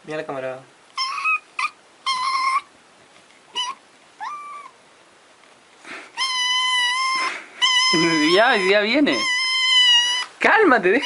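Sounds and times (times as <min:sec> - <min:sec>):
cat meowing: 0:01.0 - 0:02.7, 0:03.5 - 0:04.8, 0:06.1 - 0:10.4.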